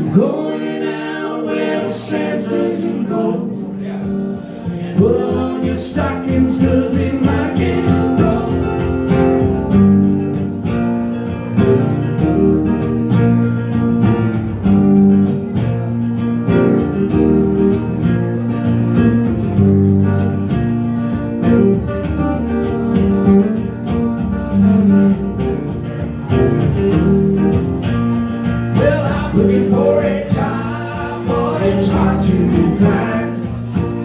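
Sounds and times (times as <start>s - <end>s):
acoustic guitar strumming: 0.0s - 34.0s.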